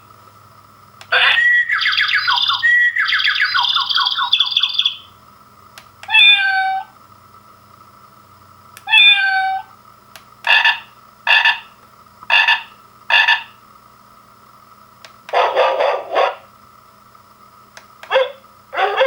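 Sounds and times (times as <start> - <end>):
recorded frog croaking: 10.5 - 11.7, 12.3 - 13.6.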